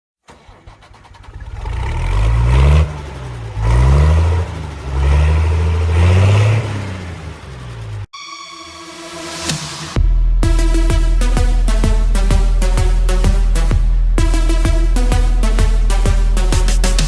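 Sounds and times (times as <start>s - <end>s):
large engine revving: 0.3s - 8.1s.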